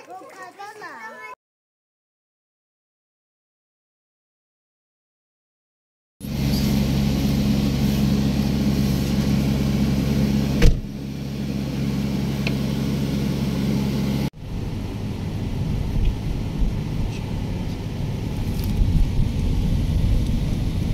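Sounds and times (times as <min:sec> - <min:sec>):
car engine humming: 0:06.2 - 0:20.9.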